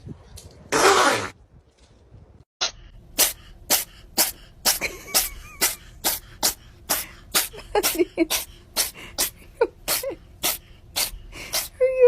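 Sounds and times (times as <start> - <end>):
animal sneezing: 3.2 - 11.8.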